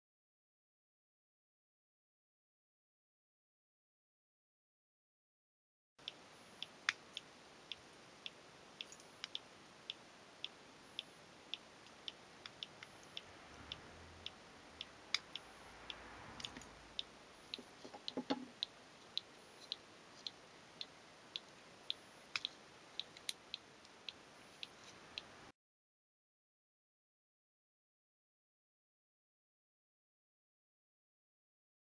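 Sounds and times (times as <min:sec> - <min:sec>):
sharp regular ticking: 0:06.0 - 0:25.4
rustle and knock: 0:17.5 - 0:20.4.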